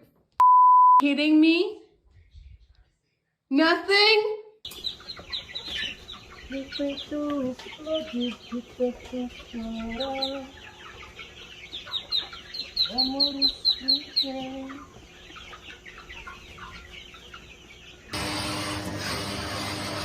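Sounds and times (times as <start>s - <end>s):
hen clucking: 4.7s - 18.4s
chicks peeping: 4.7s - 20.0s.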